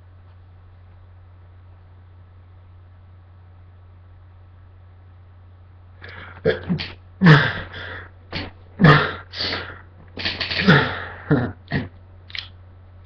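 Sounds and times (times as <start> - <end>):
man sneezing: 6.1 - 11.9
sharp breaths: 7.2 - 11.3.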